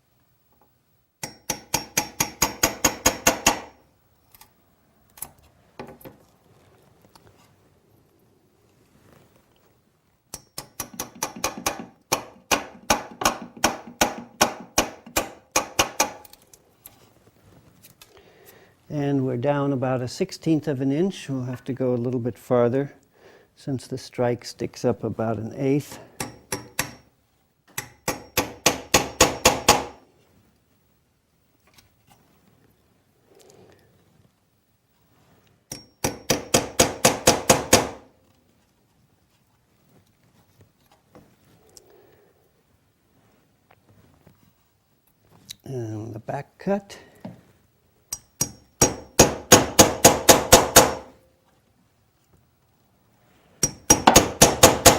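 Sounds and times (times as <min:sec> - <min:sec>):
hammer tapping chisel: 0:01.2 - 0:03.8, 0:10.3 - 0:16.4, 0:26.2 - 0:27.1, 0:27.7 - 0:30.0, 0:35.7 - 0:38.0, 0:48.1 - 0:51.1, 0:53.6 - 0:54.9.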